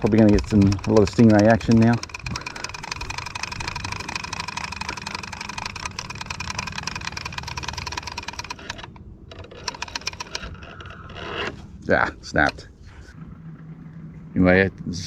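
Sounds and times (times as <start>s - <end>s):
fishing reel drag clicking: 0.0s - 11.7s
low hum: 0.0s - 15.0s.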